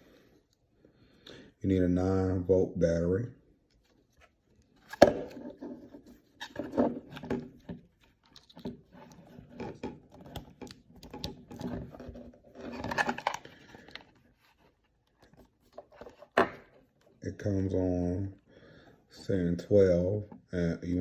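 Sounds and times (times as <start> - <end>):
plastic clicks and knocks: 6.6 - 14.1.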